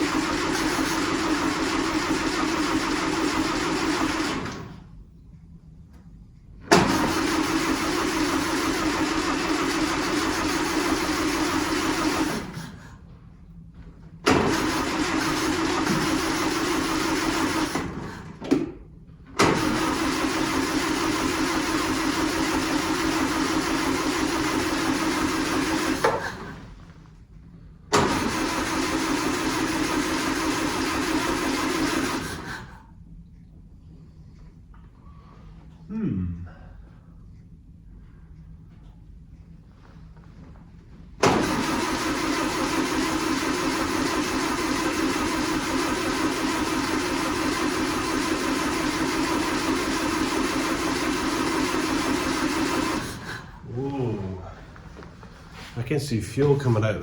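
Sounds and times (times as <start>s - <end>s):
starter motor cranking engine: 0.0s - 4.9s, 6.7s - 13.0s, 14.2s - 26.9s, 27.9s - 32.8s, 41.2s - 55.7s.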